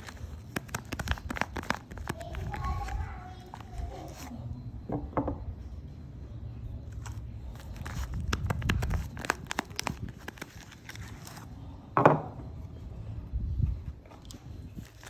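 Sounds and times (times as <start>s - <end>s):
soap bars crinkling and clicking: 0.0s - 3.7s, 7.8s - 11.4s.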